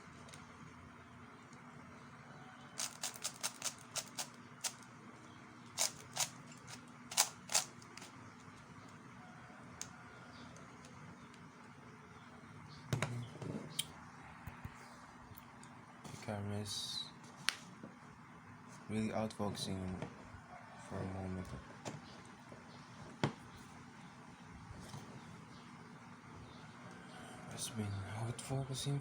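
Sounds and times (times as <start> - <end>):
puzzle cube plastic clicks: 2.8 - 4.8, 5.8 - 8.1.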